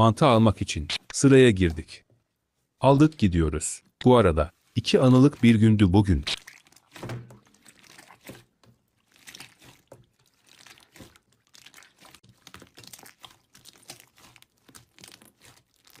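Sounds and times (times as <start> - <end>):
slime sticky clicks and crackles: 10.6 - 16.0.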